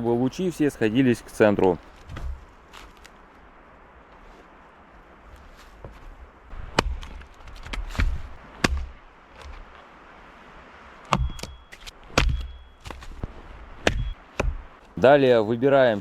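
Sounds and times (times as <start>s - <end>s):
axe chopping wood: 6.6s - 9.7s, 11.1s - 14.9s.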